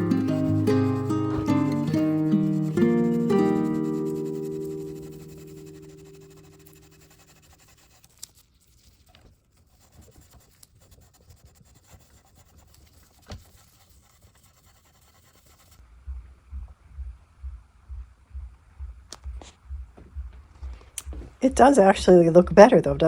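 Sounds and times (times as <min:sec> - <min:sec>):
acoustic guitar chord: 0:00.0 - 0:07.2
faint scratching with clicks: 0:05.8 - 0:15.9
low dull thuds: 0:15.9 - 0:23.0.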